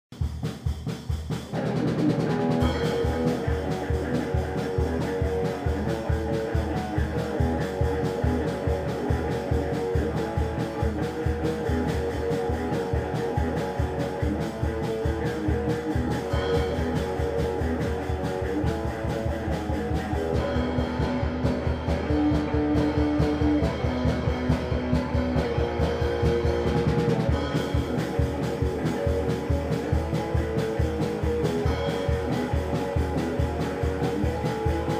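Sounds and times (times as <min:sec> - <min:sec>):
fast drum beat: 0:00.1 - 0:34.9
electric guitar riff: 0:01.3 - 0:34.9.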